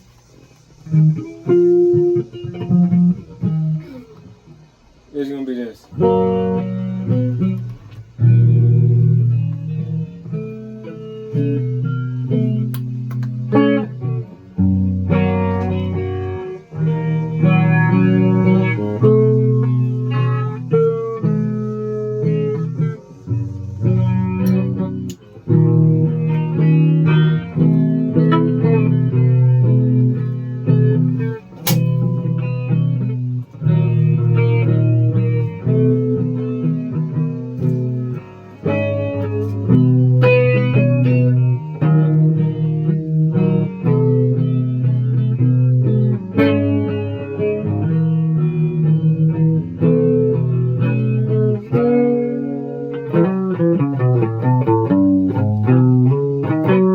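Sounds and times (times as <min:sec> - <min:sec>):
guitar playing: 0:00.0 - 0:56.9
sharp click: 0:12.6 - 0:13.4, 0:24.4 - 0:25.4, 0:31.5 - 0:32.2.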